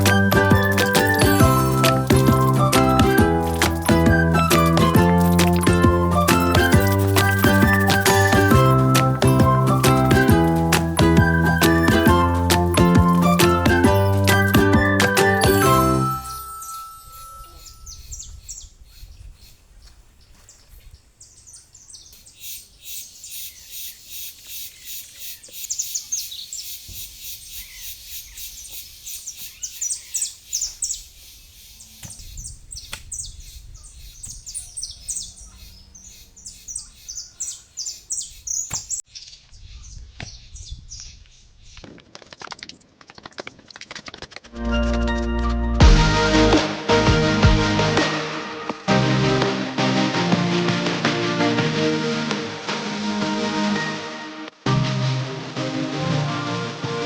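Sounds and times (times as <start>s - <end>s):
birds chirping: 0.0s - 41.2s.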